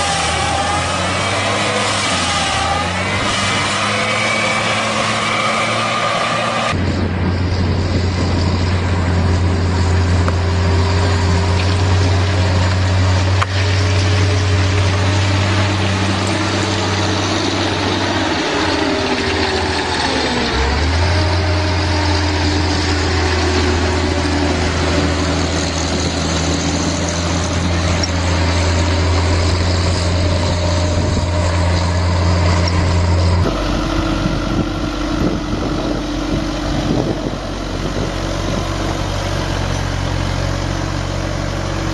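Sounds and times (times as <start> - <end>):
farm machine engine humming: 0.0 - 41.9.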